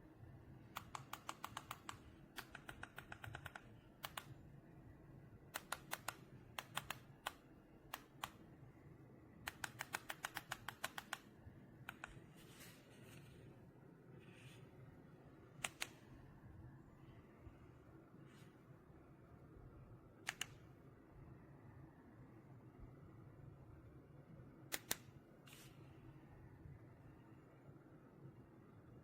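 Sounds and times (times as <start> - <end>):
plastic remote buttons clicking: 0.7 - 4.4, 5.5 - 8.4, 9.5 - 12.2, 15.6 - 16.1, 20.2 - 20.7, 24.7 - 25.1.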